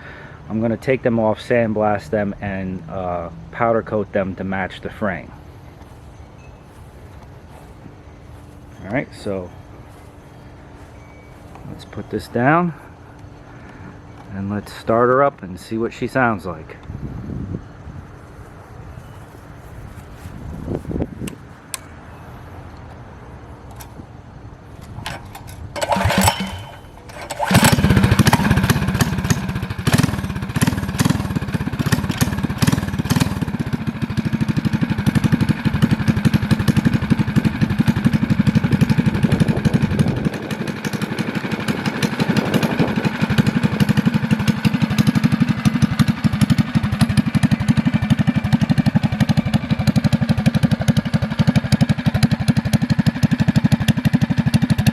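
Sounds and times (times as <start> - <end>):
small engine running: 5.3 - 14.3, 24.7 - 54.9
recoil starter pulls: 24.7 - 54.9.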